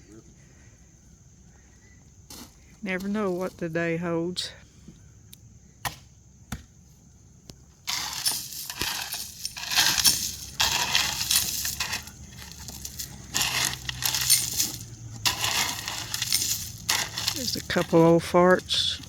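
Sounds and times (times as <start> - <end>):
gravel crunching and scraping: 1.5 - 4.0, 6.8 - 19.0.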